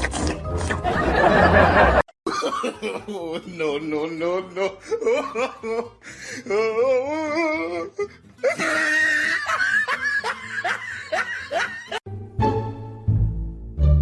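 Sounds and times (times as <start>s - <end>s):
person laughing heartily: 0.1s - 3.8s, 4.5s - 6.7s, 7.8s - 12.0s.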